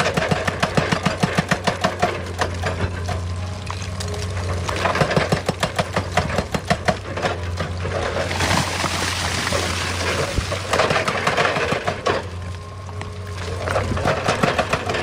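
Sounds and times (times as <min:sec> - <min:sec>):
excavator diesel engine drone: 0:00.0 - 0:15.0
loose rock sliding: 0:07.8 - 0:12.0.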